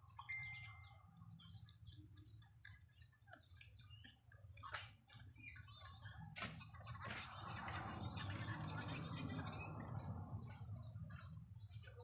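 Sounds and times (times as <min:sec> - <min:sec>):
rabbits chewing food: 0:00.0 - 0:12.0.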